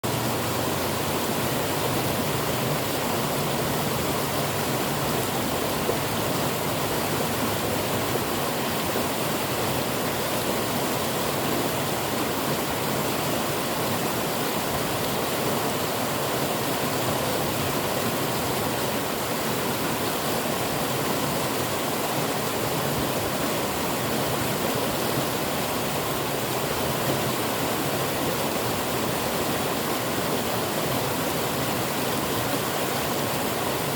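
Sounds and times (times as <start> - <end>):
river water rushing: 0.0 - 33.9.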